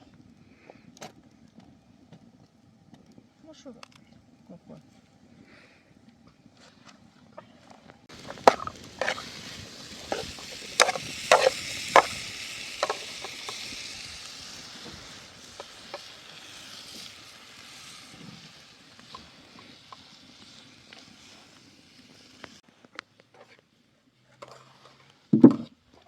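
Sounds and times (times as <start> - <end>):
food sizzling in a pan: 8.1 - 25.3.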